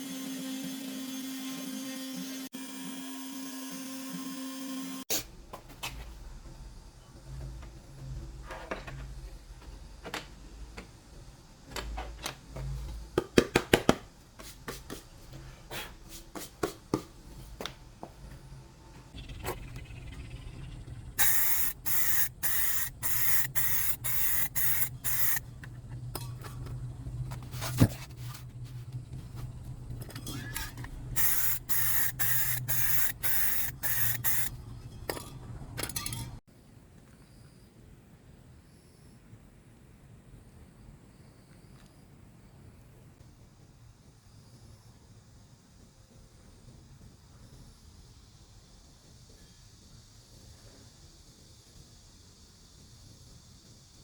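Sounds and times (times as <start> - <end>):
spray hissing in spurts: 21.1 - 25.6, 31.1 - 34.6.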